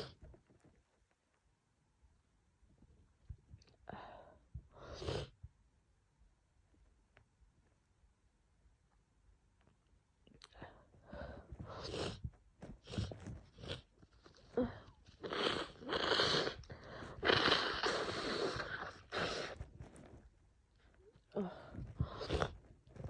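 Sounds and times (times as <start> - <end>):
nose blowing into tissue: 4.8 - 5.4, 11.6 - 13.8, 15.1 - 20.0, 21.7 - 23.0
wet sniffling: 12.8 - 19.9, 21.4 - 23.0.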